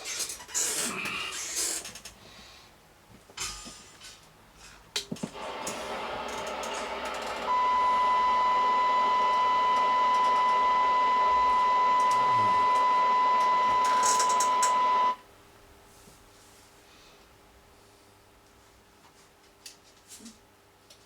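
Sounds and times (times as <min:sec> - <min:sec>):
radio hiss: 0:05.7 - 0:15.2
steady test tone: 0:07.4 - 0:15.2.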